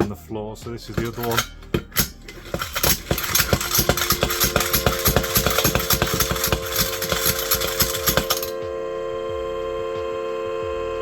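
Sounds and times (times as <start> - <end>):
plunger clattering: 0.8 - 8.5
spinning top humming: 0.8 - 8.8.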